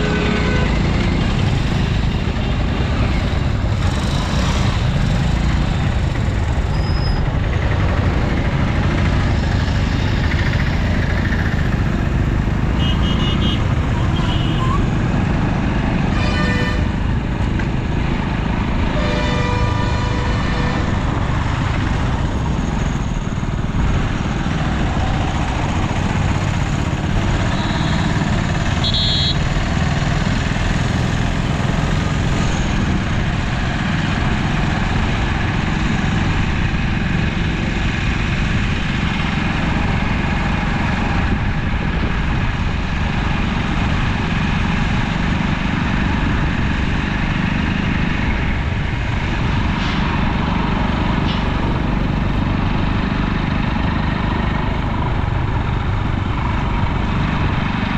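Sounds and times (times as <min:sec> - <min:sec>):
vehicle horn: 0:00.0 - 0:01.0, 0:12.8 - 0:14.8, 0:16.1 - 0:17.0, 0:18.9 - 0:21.0, 0:27.5 - 0:28.2, 0:28.8 - 0:29.5
road traffic rumble: 0:00.0 - 0:57.9.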